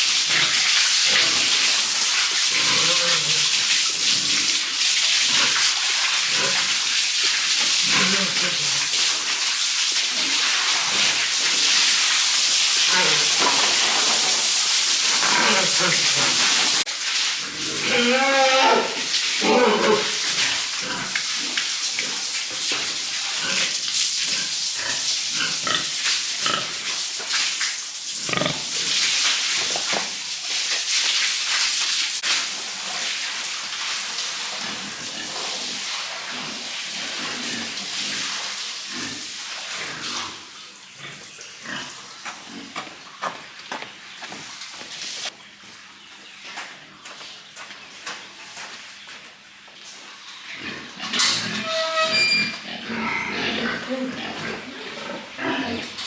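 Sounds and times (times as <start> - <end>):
pigs squealing and grunting: 2.5 - 4.4, 7.7 - 9.0, 12.8 - 14.4, 15.0 - 16.8, 17.4 - 22.2, 28.2 - 29.0, 50.5 - 56.0.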